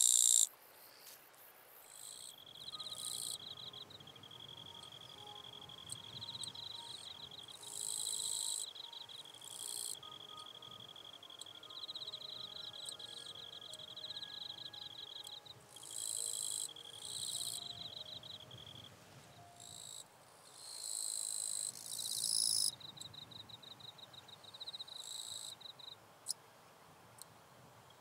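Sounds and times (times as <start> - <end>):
high pulsing insect trill: 0.0 - 26.4
katydid buzzing bursts: 5.2 - 17.6.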